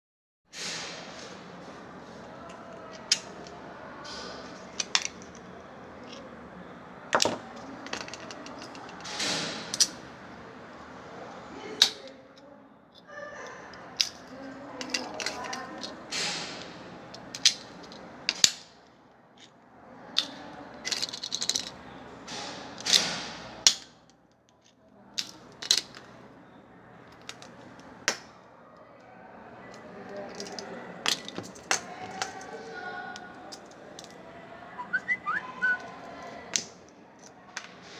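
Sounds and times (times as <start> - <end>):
plastic tags clicking and rattling: 20.2 - 21.8, 30.1 - 32.5.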